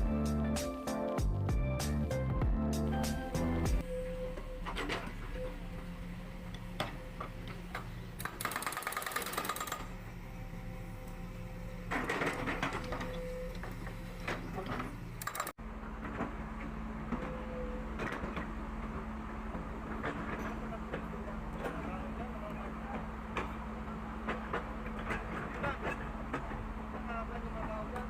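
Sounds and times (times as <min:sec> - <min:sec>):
excavator diesel engine running: 0:00.0 - 0:28.0
metal clanks and knocks: 0:11.9 - 0:21.9, 0:22.6 - 0:27.1.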